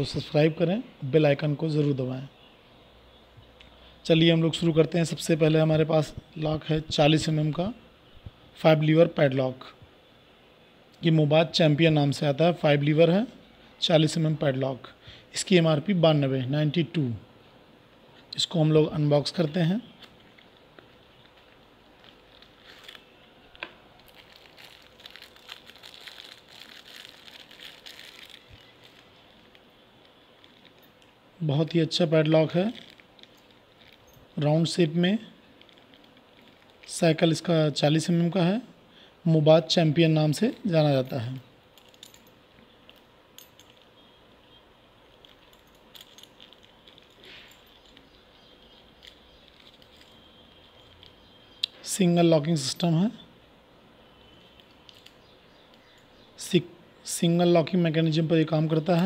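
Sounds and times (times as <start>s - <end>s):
padlock and keys clinking: 19.4s - 31.2s, 32.2s - 37.0s, 40.3s - 51.7s, 54.2s - 56.3s
packaging crinkling and rustling: 19.9s - 31.2s, 32.4s - 34.4s, 35.4s - 37.1s, 45.1s - 51.5s.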